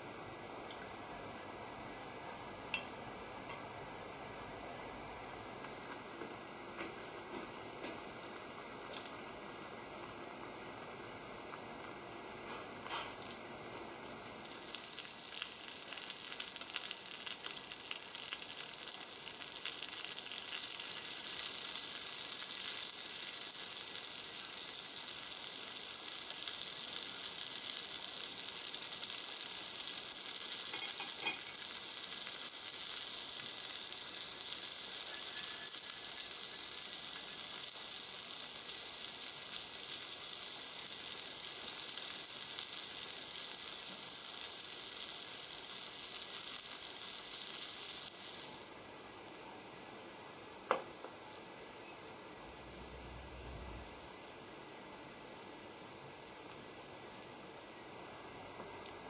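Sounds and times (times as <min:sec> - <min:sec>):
food sizzling in a pan: 0:13.1 - 0:59.0.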